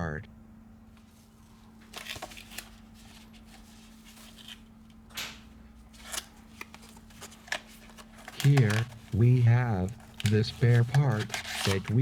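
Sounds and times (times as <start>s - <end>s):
faint steady hum: 0.0s - 12.0s
phone parts scraping: 5.9s - 12.0s.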